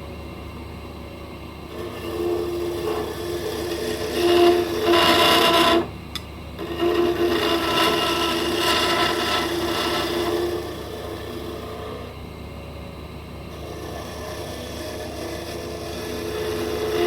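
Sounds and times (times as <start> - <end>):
wood lathe humming: 1.5 - 17.0
tool scraping spinning wood: 1.7 - 6.0, 6.6 - 12.2, 13.5 - 17.0.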